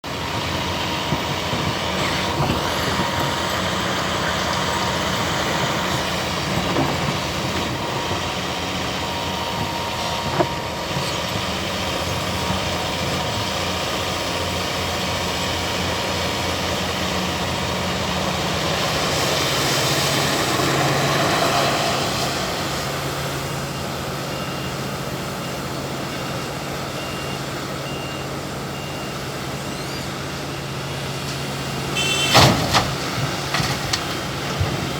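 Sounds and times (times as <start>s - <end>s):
heavy diesel machinery running: 0.0s - 34.9s
faint reversing alarm beeping: 2.4s - 13.2s, 23.3s - 32.4s.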